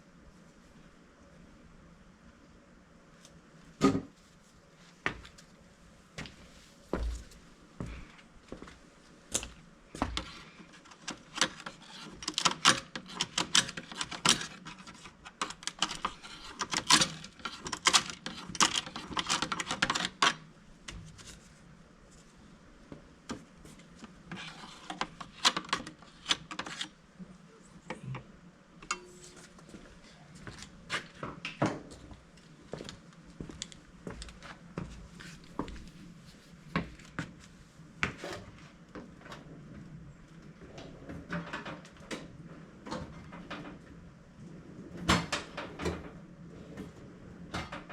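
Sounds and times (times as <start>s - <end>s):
clicking scratching and rustling: 10.1s - 20.4s.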